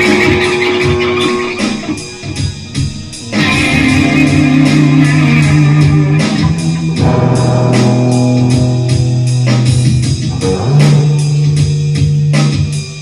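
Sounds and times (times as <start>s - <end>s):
rock band playing loudly: 0.0s - 13.0s.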